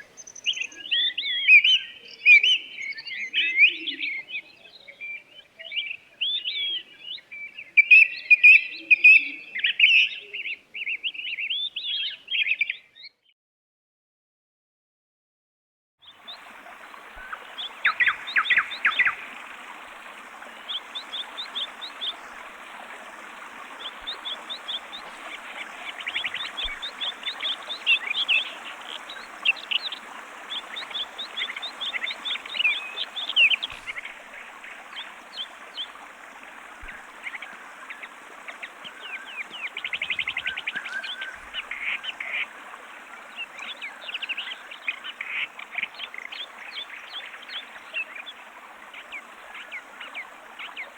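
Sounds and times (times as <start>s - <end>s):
small birds chirping and trilling: 16.0s - 50.9s
steady background hiss: 16.3s - 50.9s.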